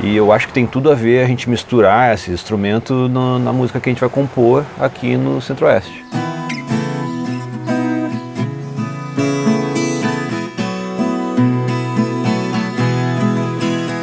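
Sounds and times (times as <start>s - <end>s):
plucked guitar notes ringing: 5.8s - 14.0s.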